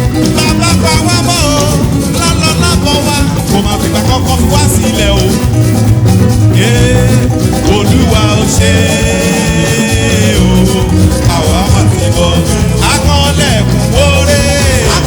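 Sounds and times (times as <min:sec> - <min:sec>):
band accompaniment with bass: 0:00.0 - 0:15.0
choir singing: 0:06.6 - 0:13.1, 0:13.9 - 0:15.0.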